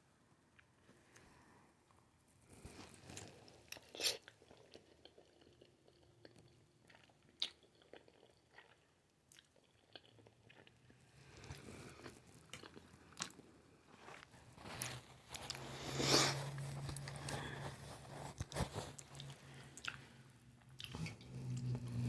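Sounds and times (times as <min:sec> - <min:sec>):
wet chewing: 0:14.0 - 0:22.0.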